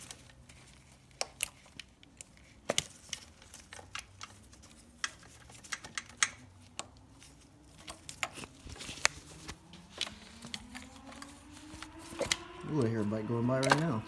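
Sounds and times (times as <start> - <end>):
parts clicking and rattling: 0.0 - 11.4
faint motorbike engine passing: 7.6 - 14.0.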